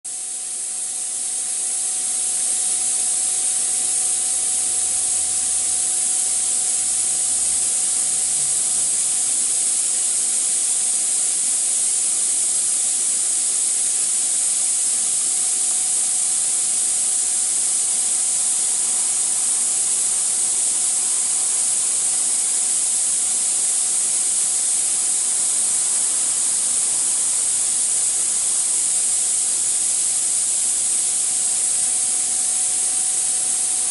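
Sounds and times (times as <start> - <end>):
faint steady hum: 0.1 - 33.9
grinding machine hiss: 0.1 - 33.9.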